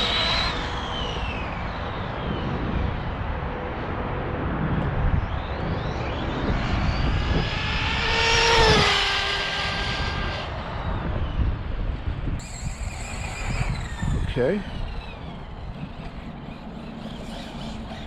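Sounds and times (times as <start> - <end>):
rc car motor whining: 0.0 - 2.1, 6.6 - 10.6, 12.4 - 18.0.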